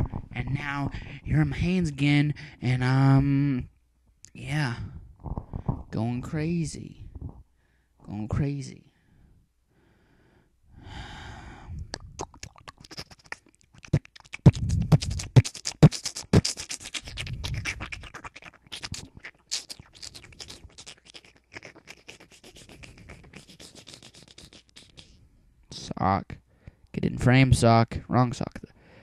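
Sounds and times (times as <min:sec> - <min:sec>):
clicks and thumps on microphone: 0:00.0 - 0:01.6, 0:04.9 - 0:06.1, 0:07.0 - 0:07.5.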